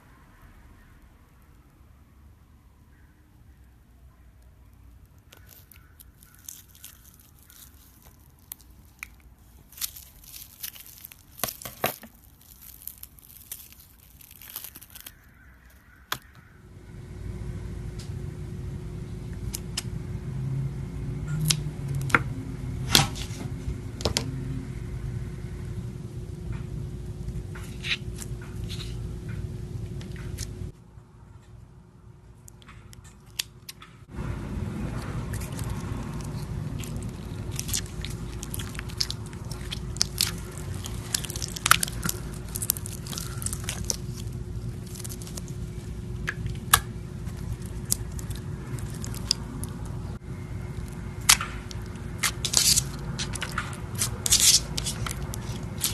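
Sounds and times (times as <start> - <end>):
steady low hum: 0.0 - 55.9
slime ball crackling clicks: 46.2 - 49.8.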